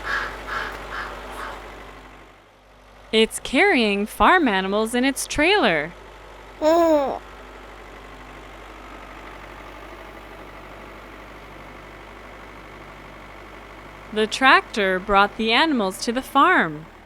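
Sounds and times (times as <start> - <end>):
cartoon tractor engine: 0.0 - 17.0.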